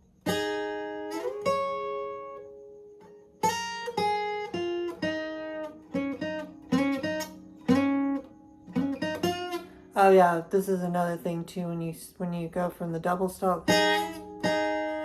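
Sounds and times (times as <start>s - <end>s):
guitar riff of picked notes: 12.8s - 15.0s.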